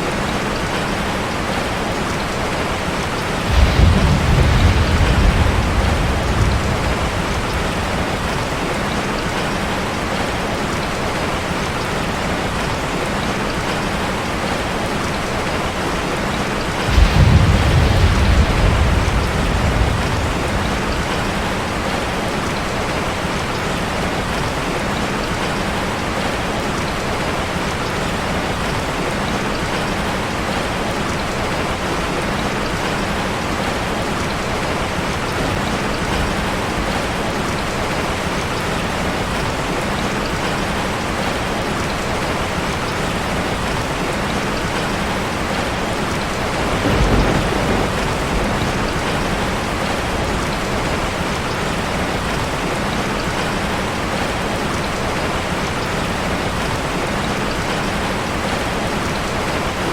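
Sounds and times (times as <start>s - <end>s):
rain falling on a street: 0.0s - 59.9s
low rumble: 3.5s - 8.8s, 16.9s - 21.9s.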